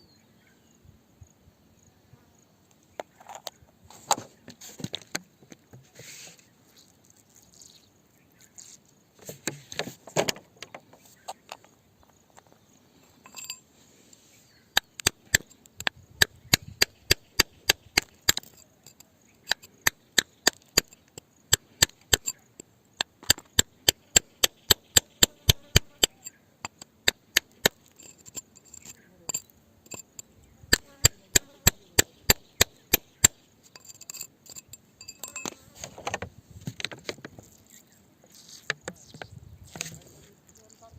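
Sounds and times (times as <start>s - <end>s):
knocks and scraping: 3.0s - 6.5s, 9.2s - 40.4s
hand tool striking rock: 14.8s - 35.6s.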